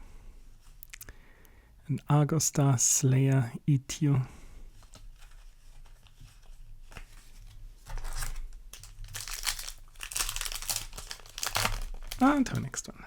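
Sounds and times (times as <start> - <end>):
foil wrapper crinkling and tearing: 6.9 - 12.9.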